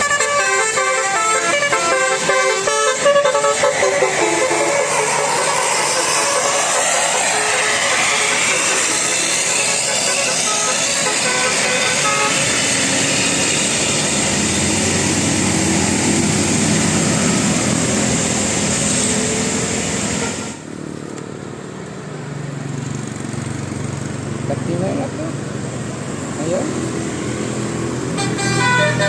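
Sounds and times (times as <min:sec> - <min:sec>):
bus musical horn: 0:00.0 - 0:14.4, 0:19.7 - 0:20.7, 0:28.1 - 0:29.0
engine hum: 0:00.0 - 0:29.0
heavy engine: 0:00.0 - 0:29.0.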